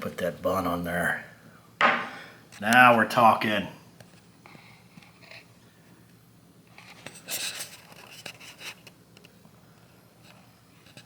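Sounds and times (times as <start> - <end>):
sandwich scraping and rustling: 6.7 - 8.9.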